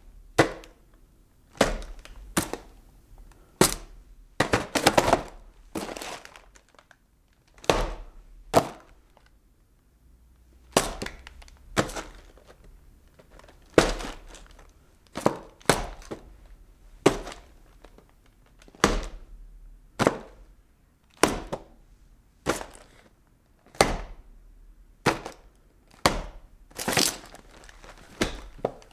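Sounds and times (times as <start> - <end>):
cardboard boxes thudding: 3.6 - 6.4, 10.7 - 16.3, 26.1 - 28.9
papery rustle: 26.8 - 28.9.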